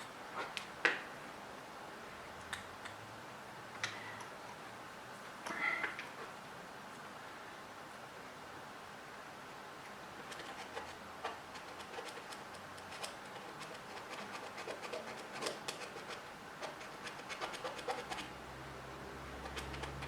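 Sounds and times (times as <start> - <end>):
small brush scrubbing: 10.3 - 18.3, 19.4 - 20.0.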